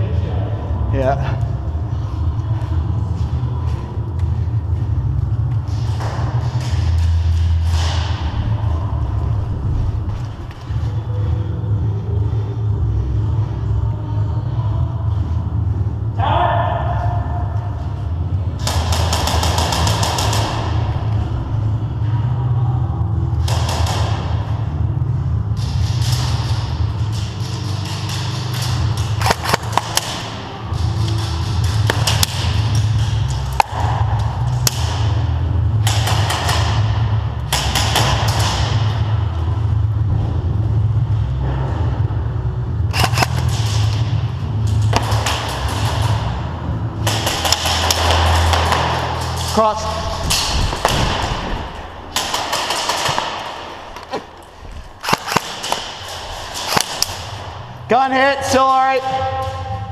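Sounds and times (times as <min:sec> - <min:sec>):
bass-heavy electronic music: 0:00.0 - 0:27.6
airsoft guns firing: 0:18.6 - 0:21.0, 0:23.4 - 0:24.5, 0:25.8 - 0:39.0, 0:42.9 - 0:44.2, 0:44.8 - 0:46.4, 0:47.0 - 0:57.8.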